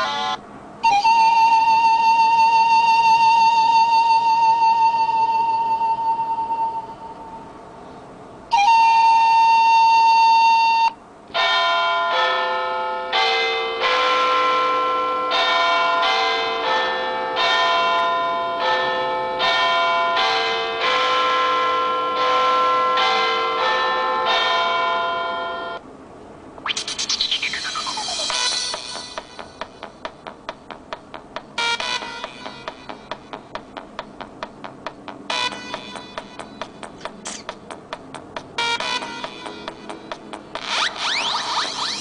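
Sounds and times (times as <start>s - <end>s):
held electronic tone: 26.6s - 30.0s, 31.6s - 42.0s.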